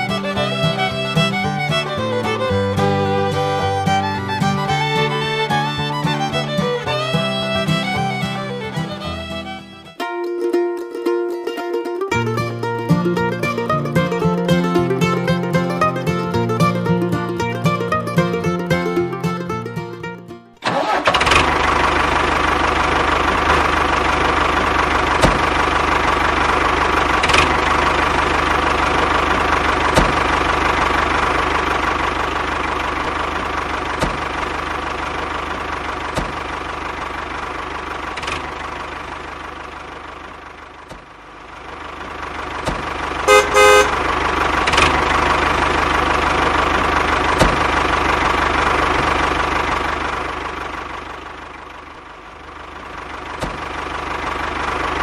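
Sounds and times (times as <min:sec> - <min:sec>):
horn toots: 0:43.3 - 0:44.0.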